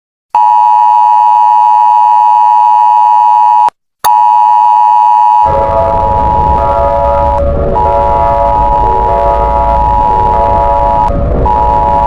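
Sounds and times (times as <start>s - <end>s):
harsh alarm with low rumble: 4.2s - 12.0s
steady electronic alert tone: 5.3s - 12.0s.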